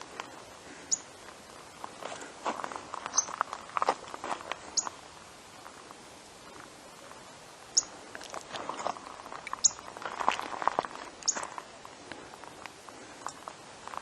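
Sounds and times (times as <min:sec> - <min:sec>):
footsteps crunching on dry ground: 0:00.0 - 0:05.0, 0:08.1 - 0:14.0
high falling bird chirps: 0:00.9 - 0:01.1, 0:07.7 - 0:08.0, 0:09.6 - 0:09.9.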